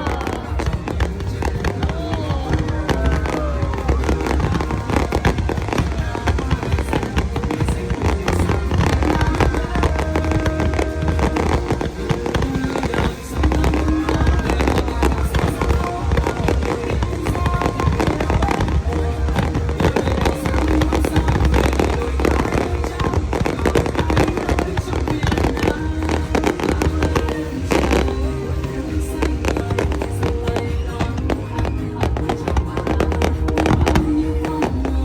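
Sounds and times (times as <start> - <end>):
fireworks bangs and crackles: 0.0 - 35.0
music: 0.0 - 35.0.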